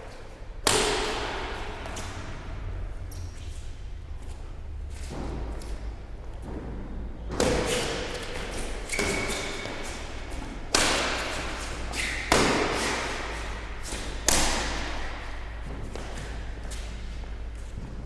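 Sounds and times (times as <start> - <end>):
racquet striking shuttlecock: 0.6 - 2.4, 7.3 - 17.0.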